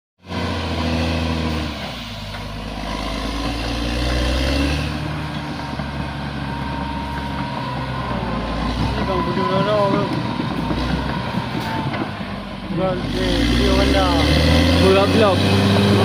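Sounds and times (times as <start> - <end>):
bulldozer diesel engine under load: 0.2 - 16.0.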